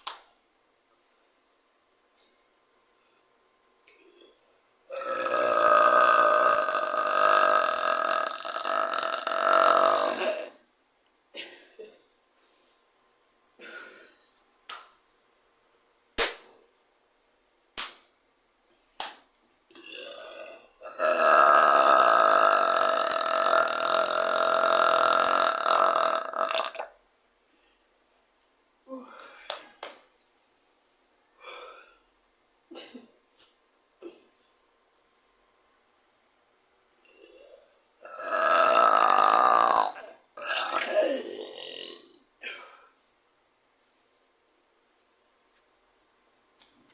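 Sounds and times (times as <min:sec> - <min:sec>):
woman burping: 0:04.0 - 0:10.6, 0:19.8 - 0:26.9, 0:37.1 - 0:42.8
woman belching: 0:04.9 - 0:10.6, 0:19.8 - 0:26.9, 0:37.1 - 0:42.2.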